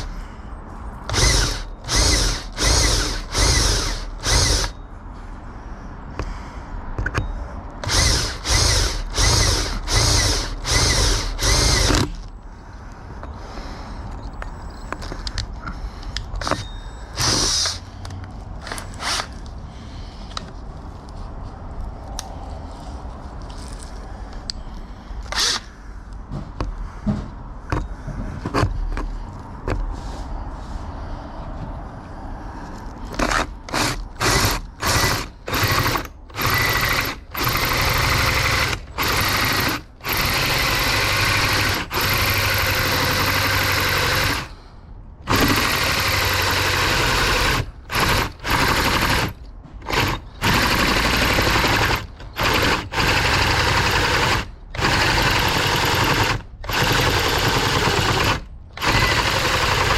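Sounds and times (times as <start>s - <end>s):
power drill boring into steel: 1.1s - 4.8s, 7.8s - 12.2s, 16.4s - 17.8s, 25.3s - 25.7s, 33.2s - 44.5s, 45.3s - 59.9s
tool handling clicks and knocks: 7.0s - 8.6s, 14.1s - 19.6s, 25.2s - 29.9s.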